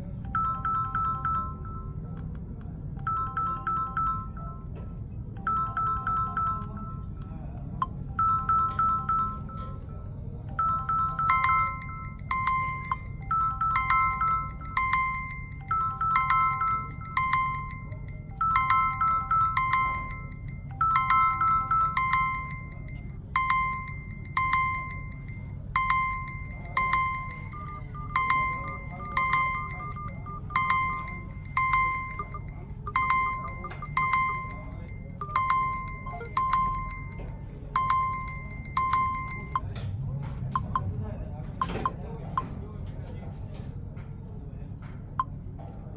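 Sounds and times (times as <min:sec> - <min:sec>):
melodic ringtone chime: 0:00.1 - 0:02.2, 0:03.0 - 0:07.2, 0:07.8 - 0:39.7
low hum: 0:02.9 - 0:39.7
high repeating beep tone: 0:05.4 - 0:07.1, 0:07.8 - 0:09.8, 0:10.5 - 0:39.7.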